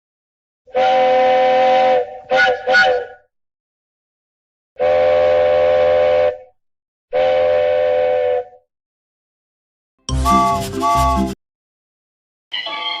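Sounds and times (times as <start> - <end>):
train whistle blasts: 0.7 - 3.2, 4.8 - 6.5, 7.1 - 8.6, 10.1 - 11.4.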